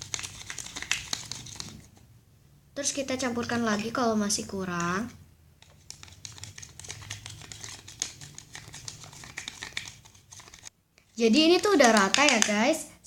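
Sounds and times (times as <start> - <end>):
stirrer scraping a container: 5.6 - 12.0.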